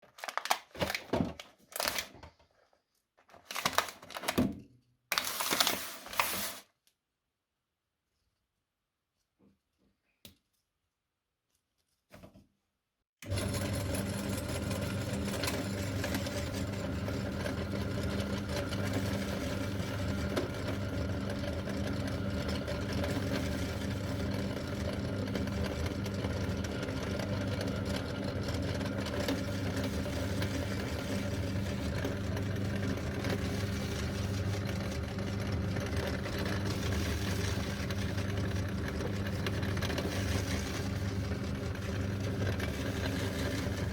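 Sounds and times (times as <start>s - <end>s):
electric meat grinder running: 13.2s - 43.9s.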